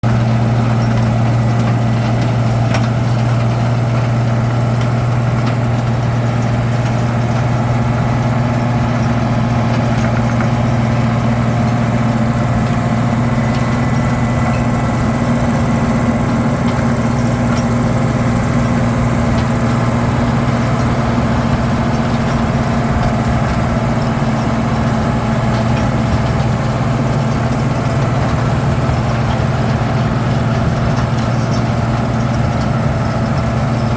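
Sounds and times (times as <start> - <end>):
diesel engine droning: 0.0 - 33.9.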